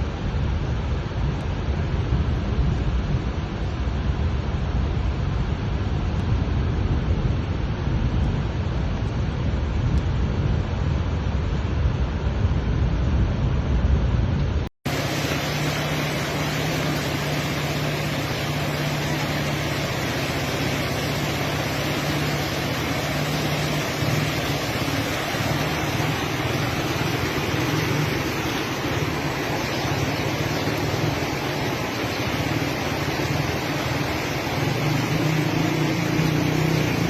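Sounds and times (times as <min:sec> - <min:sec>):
heavy rain: 0:14.9 - 0:37.0
rushing floodwater: 0:14.9 - 0:37.0.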